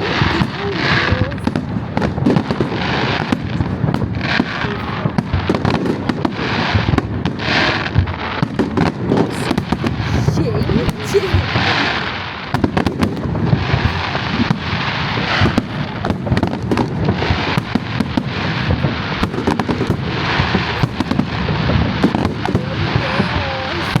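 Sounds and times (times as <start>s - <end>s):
fireworks bangs: 0.0s - 24.0s
fireworks crackling: 0.0s - 24.0s.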